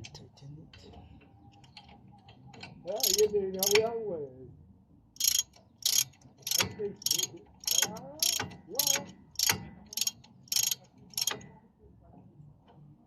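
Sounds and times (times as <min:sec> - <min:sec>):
ratchet wrench clicking: 0:02.9 - 0:03.9, 0:05.2 - 0:11.4.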